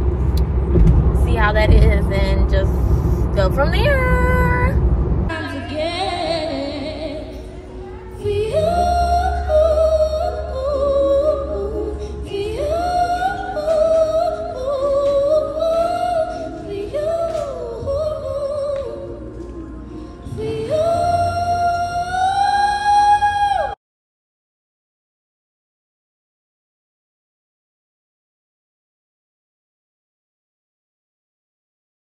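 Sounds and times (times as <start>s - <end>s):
low bass: 0.0s - 23.8s
singer holding long notes: 1.4s - 23.8s.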